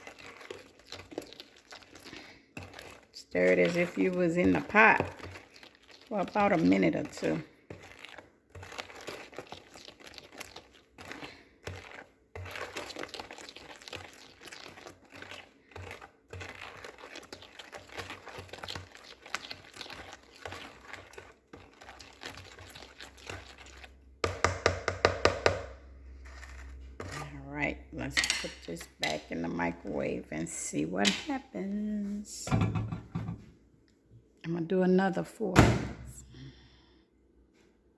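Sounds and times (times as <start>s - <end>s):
spoon scraping in a bowl: 0.0s - 24.0s, 25.3s - 29.4s.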